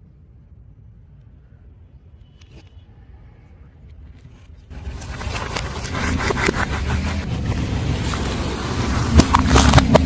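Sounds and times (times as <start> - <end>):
car engine rumble: 4.6 - 10.0
tyre crushing objects: 4.7 - 10.0.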